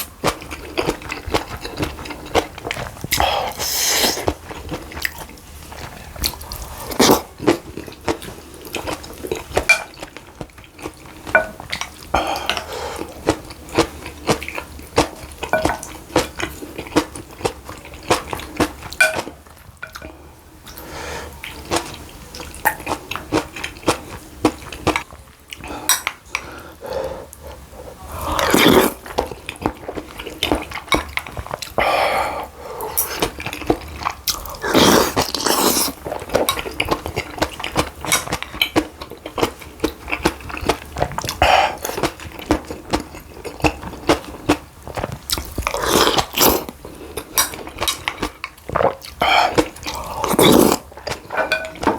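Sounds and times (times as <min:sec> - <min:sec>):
mouth sounds of eating: 0:00.0 - 0:19.3, 0:19.9 - 0:51.9
utensils clinking and scraping dishes: 0:51.0 - 0:51.9.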